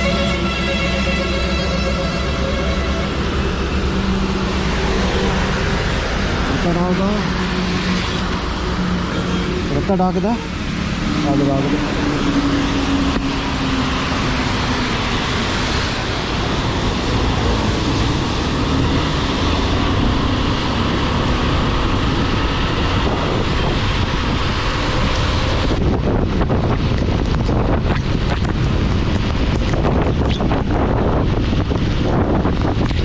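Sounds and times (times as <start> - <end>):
motorcycle engine: 0.0 - 22.1
road noise: 0.0 - 33.0
wind roaring over microphone: 0.0 - 33.0.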